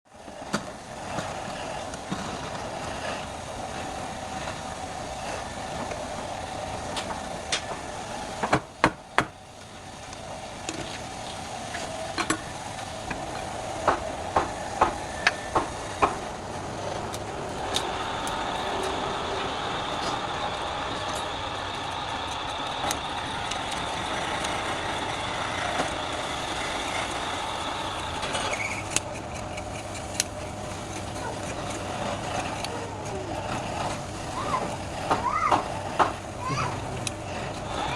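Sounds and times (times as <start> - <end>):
high steady whine: 0.1 - 37.9
wood lathe running: 0.1 - 37.9
sharp knocks: 8.4 - 9.4.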